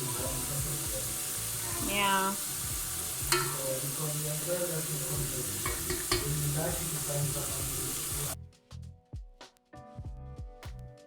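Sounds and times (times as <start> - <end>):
food sizzling in a pan: 0.0 - 8.4
quiet music: 0.0 - 11.0.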